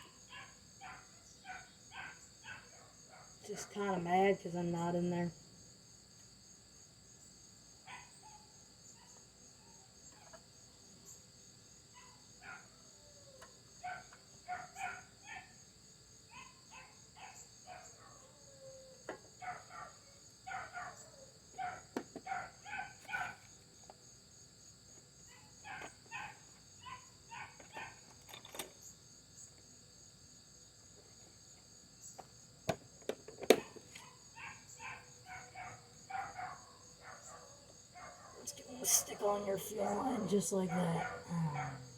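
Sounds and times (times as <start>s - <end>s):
dog barking and whining: 0.3s - 3.3s, 12.0s - 12.7s, 13.8s - 15.5s, 19.4s - 23.4s, 25.3s - 28.0s, 33.6s - 41.9s.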